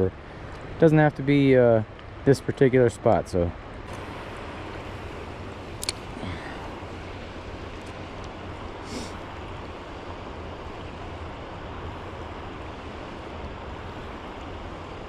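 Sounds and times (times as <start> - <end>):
river water rushing: 3.9 - 15.0.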